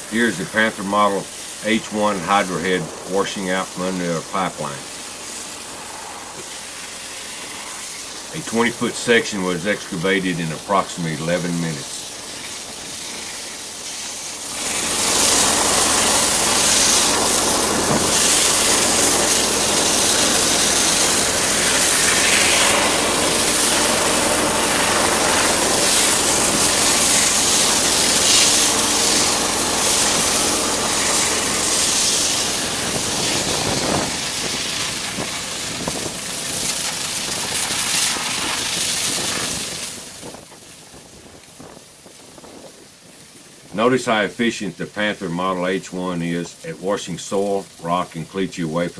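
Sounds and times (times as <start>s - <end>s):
low machine hum: 0.0s - 48.4s
high-pressure water jet hissing: 0.0s - 48.9s.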